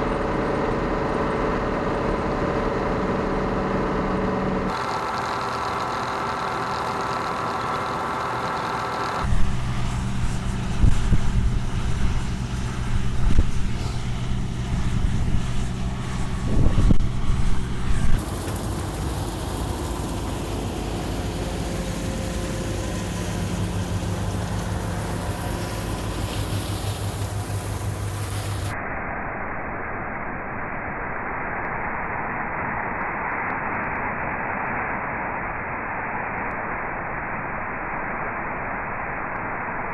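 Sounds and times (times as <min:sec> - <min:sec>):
combine harvester engine running: 0:00.0 - 0:28.8.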